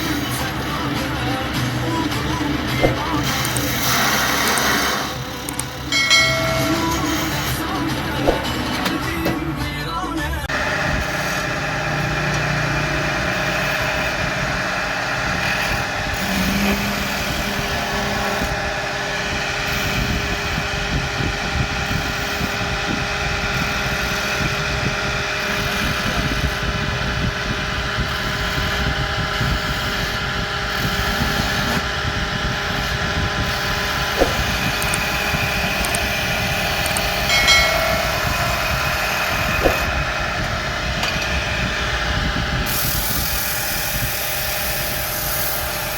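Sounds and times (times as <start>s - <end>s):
woodworking machine motor hum: 0.0s - 45.9s
sharp clicks: 0.3s - 9.5s.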